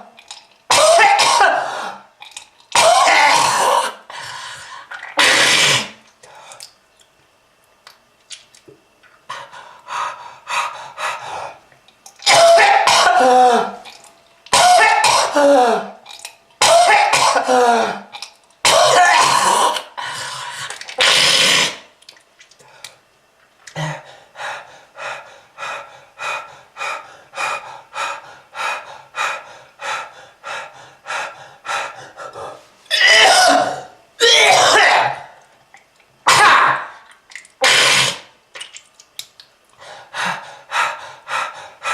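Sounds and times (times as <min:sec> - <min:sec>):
person coughing hard: 0:00.7 - 0:01.9, 0:02.8 - 0:04.0, 0:12.2 - 0:13.8, 0:14.5 - 0:16.0, 0:16.6 - 0:19.8, 0:32.9 - 0:35.3, 0:36.3 - 0:36.9.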